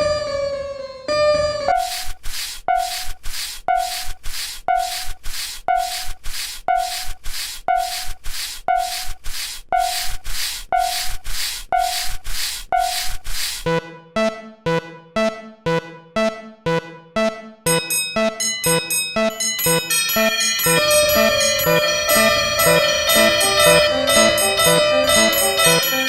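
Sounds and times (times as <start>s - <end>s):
rasping scraping hiss bursts: 1.8s - 13.7s.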